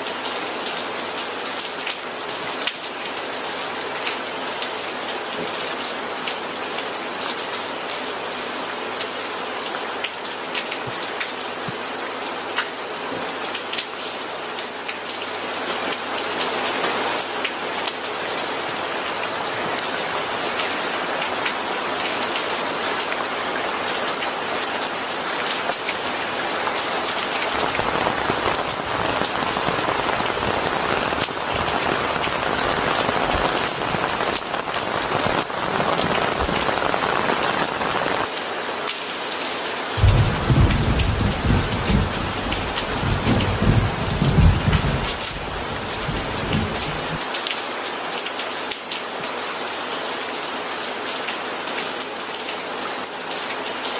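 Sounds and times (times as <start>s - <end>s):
heavy rain falling: 0.0s - 53.9s
thunder rumble: 27.4s - 37.8s, 40.0s - 47.2s.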